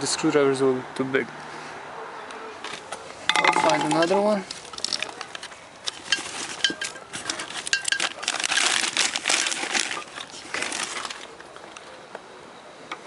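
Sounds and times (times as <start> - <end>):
hand tools clattering in toolbox: 3.3 - 5.2, 5.9 - 11.3.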